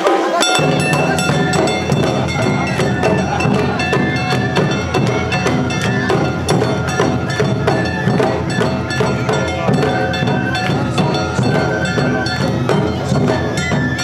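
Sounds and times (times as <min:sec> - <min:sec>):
bamboo flute melody: 0:00.0 - 0:14.0
bell-gongs clanging: 0:00.0 - 0:14.0
taiko drums beating: 0:00.0 - 0:14.0.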